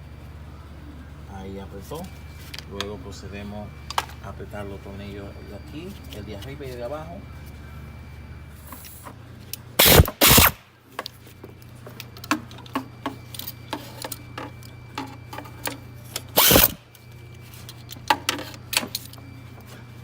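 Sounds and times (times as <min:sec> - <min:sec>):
power tool bursts: 0:09.8 - 0:10.7, 0:16.2 - 0:16.9
light tool clicks: 0:16.4 - 0:16.8.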